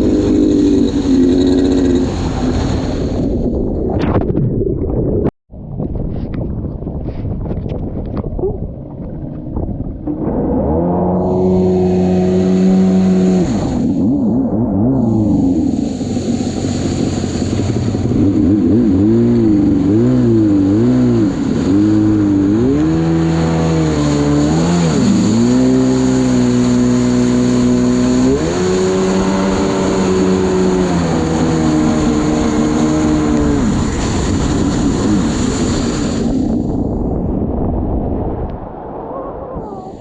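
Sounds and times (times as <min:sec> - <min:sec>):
jet ski engine revving: 0:00.0 - 0:03.5, 0:10.0 - 0:36.8.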